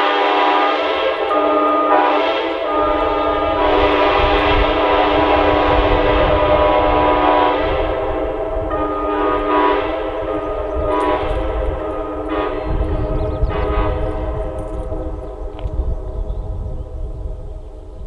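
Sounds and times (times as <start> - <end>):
locomotive air horns chord: 0.0 - 15.8.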